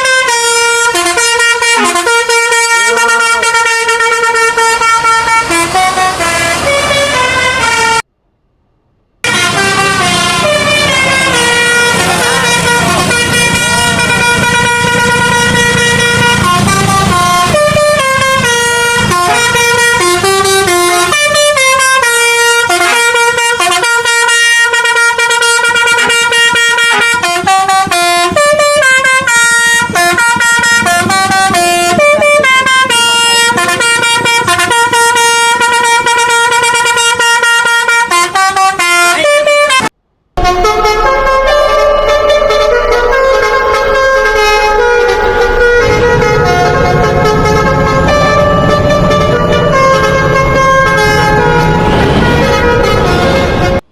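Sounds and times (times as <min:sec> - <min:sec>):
multi-tone air horn melody: 0:00.0 - 0:08.1, 0:09.2 - 0:53.9
low rumble: 0:40.4 - 0:53.7.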